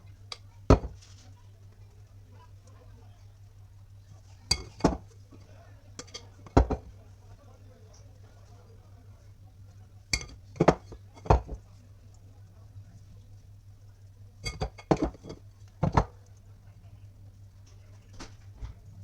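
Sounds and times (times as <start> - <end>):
steady low hum: 0.0 - 19.0
dishes and utensils clinking: 4.5 - 5.1, 6.0 - 6.9, 10.1 - 11.6, 14.4 - 16.1.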